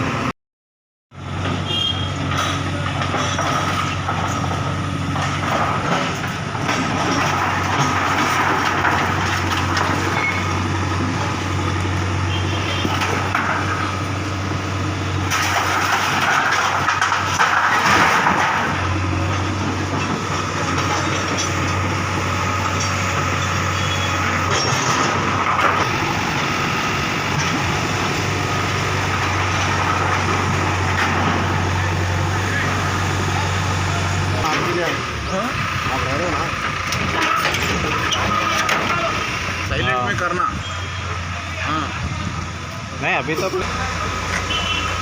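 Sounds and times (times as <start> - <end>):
bulldozer diesel engine running: 0.0 - 0.3, 1.2 - 45.0.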